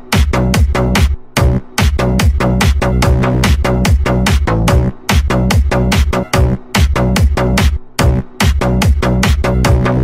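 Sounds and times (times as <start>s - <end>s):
electronic dance music: 0.0s - 10.0s.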